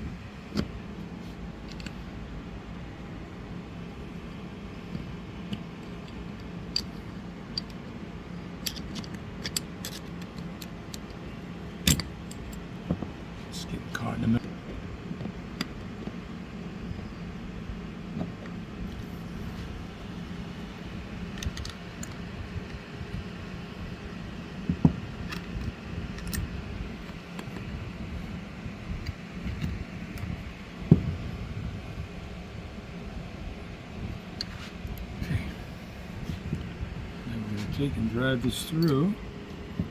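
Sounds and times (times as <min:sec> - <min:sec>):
metallic clicks of engine parts: 0:01.6 - 0:02.0, 0:04.8 - 0:07.9, 0:08.5 - 0:11.2, 0:11.8 - 0:12.7, 0:21.3 - 0:22.8, 0:24.8 - 0:27.8, 0:37.5 - 0:39.9
low hum: 0:10.3 - 0:39.9.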